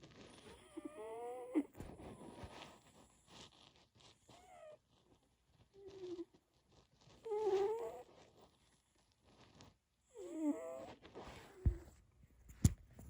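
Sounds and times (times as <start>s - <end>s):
cat snoring moan: 0.3s - 2.4s, 7.2s - 8.1s, 10.1s - 11.9s.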